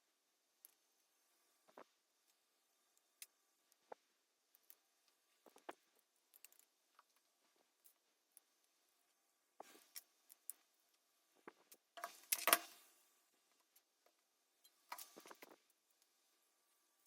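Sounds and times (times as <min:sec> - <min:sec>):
small hard parts clicking and rattling: 0:04.6 - 0:08.4, 0:11.4 - 0:12.8.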